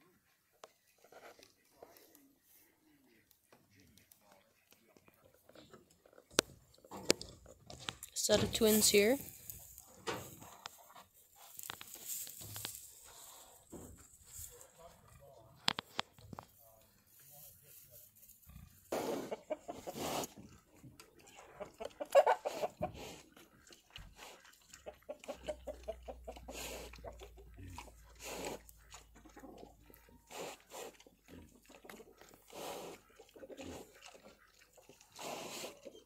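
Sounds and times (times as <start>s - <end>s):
chickens clucking: 18.5s - 36.0s.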